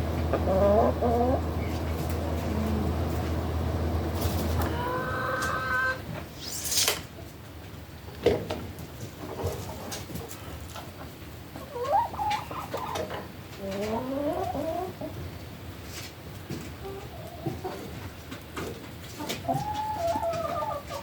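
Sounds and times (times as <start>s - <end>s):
chickens calling: 0.0s - 6.2s, 9.2s - 15.4s, 16.7s - 21.0s.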